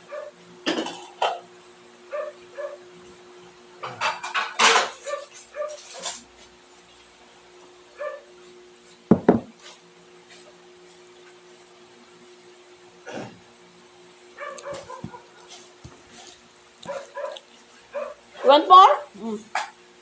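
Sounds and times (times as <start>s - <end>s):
dog barking sharply: 14.4s - 15.2s, 16.8s - 17.4s.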